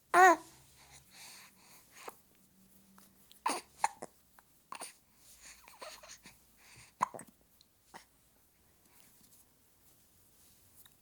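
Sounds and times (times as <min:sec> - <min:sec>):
soft baby vocal sounds: 0:00.0 - 0:08.2
baby hiccupping: 0:03.4 - 0:05.0, 0:07.0 - 0:07.3.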